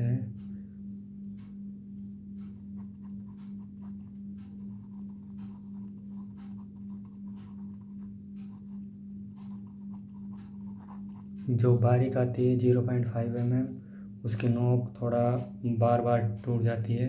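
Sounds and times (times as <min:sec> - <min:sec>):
pencil scratching on paper: 0:02.4 - 0:11.4.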